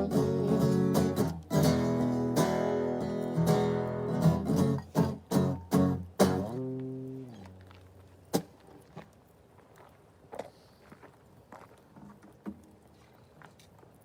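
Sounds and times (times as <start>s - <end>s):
acoustic guitar strumming: 0.0s - 8.5s.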